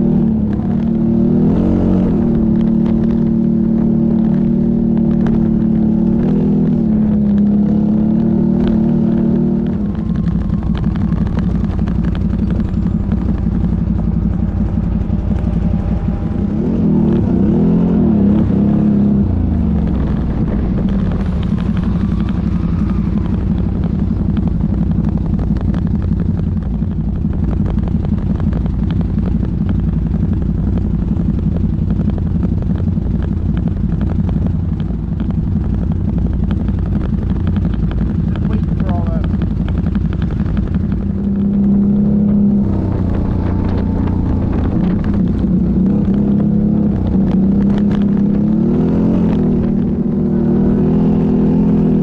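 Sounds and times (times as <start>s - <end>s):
atv engine running: 0.0s - 52.0s.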